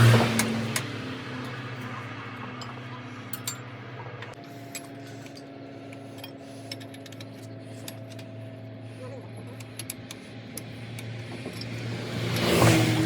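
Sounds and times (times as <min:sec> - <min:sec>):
steady engine hum: 0:00.0 - 0:13.0
hand tools clinking on metal: 0:00.3 - 0:08.4.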